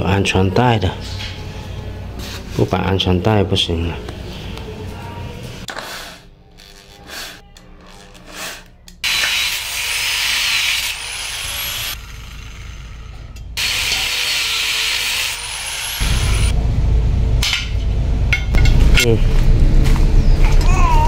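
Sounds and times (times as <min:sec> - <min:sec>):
loud low rumble: 0:16.0 - 0:20.7.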